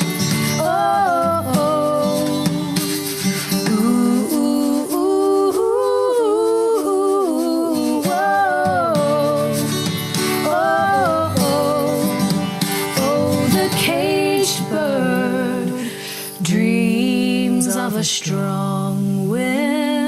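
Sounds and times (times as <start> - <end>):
acoustic guitar: 0.0 - 20.0
woman singing wordless melody: 0.0 - 20.0.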